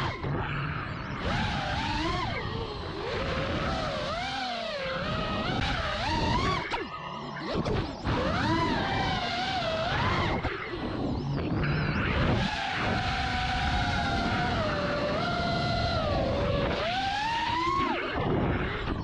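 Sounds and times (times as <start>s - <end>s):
quadcopter motors whining: 0.0s - 19.0s.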